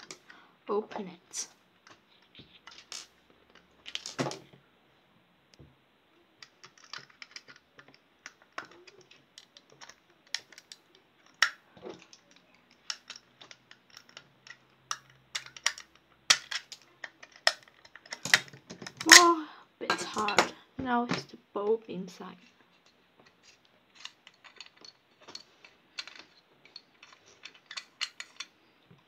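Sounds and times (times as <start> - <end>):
plastic case clicking and snapping: 6.4 - 19.2.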